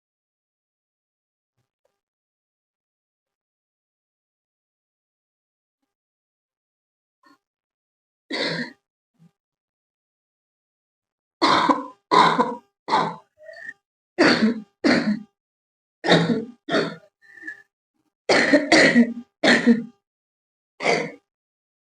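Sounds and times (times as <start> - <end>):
woman coughing: 8.3 - 8.8, 11.4 - 15.3, 16.1 - 17.0, 18.3 - 19.9, 20.8 - 21.2.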